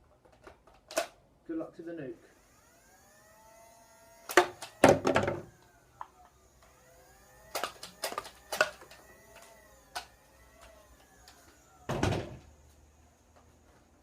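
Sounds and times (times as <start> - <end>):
toy blaster clacks: 4.2 - 5.0, 7.4 - 11.5.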